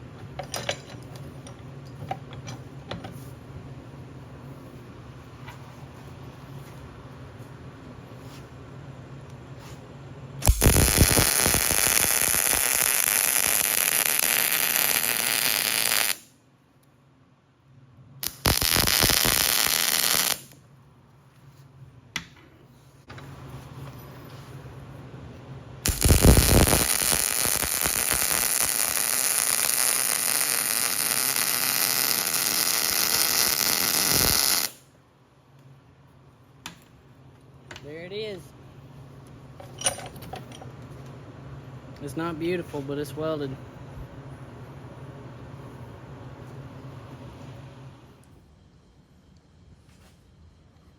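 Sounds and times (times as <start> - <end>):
arc welding crackling hiss: 10.4 - 16.3, 18.2 - 20.6, 25.8 - 34.9
sharp welding arc crack: 10.4 - 16.4, 18.2 - 20.6, 25.8 - 34.8.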